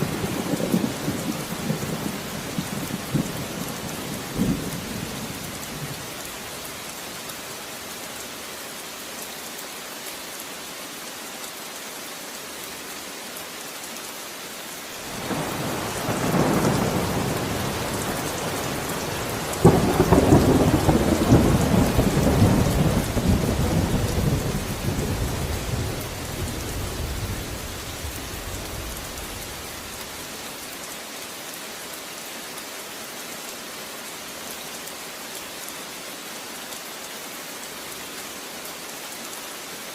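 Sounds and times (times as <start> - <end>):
steady rain falling: 0.0 - 39.9
thunder rumble and crack: 15.1 - 30.0.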